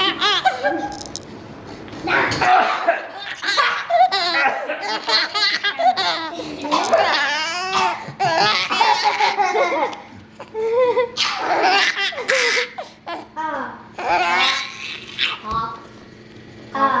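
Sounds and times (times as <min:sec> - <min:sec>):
baby laughing: 0:00.0 - 0:01.0, 0:02.4 - 0:13.3, 0:14.0 - 0:15.4.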